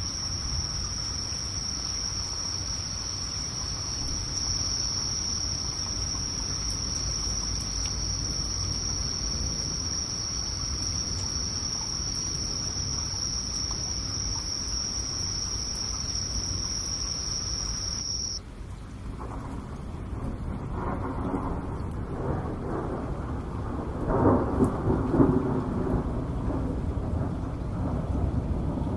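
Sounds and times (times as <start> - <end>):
insects trilling: 0.0 - 18.4.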